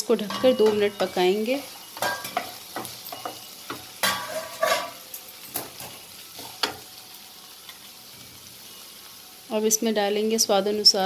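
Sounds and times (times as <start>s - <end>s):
vegetables frying in oil: 0.0s - 11.0s
metal spatula scraping pan: 0.1s - 6.8s.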